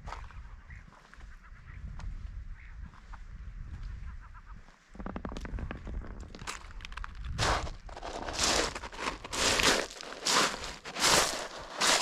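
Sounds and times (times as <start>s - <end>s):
wind on microphone: 0.0s - 9.6s.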